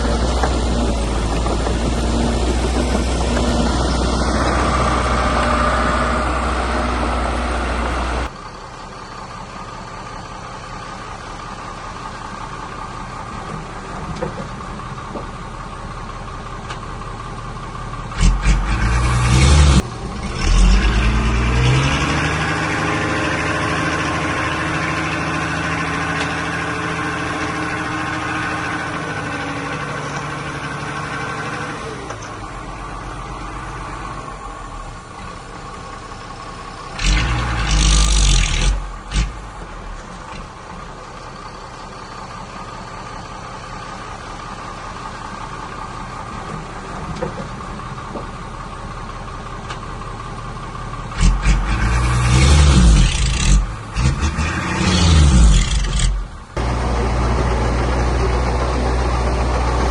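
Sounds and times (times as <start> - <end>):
engine revving: 0.0 - 8.3, 18.2 - 32.4, 36.9 - 39.6, 51.2 - 59.9
diesel engines running: 0.0 - 59.9.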